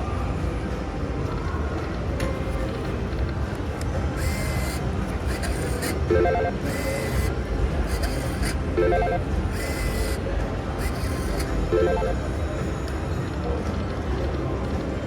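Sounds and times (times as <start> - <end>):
slot machine electronic sounds: 5.3 - 10.2, 10.8 - 12.4.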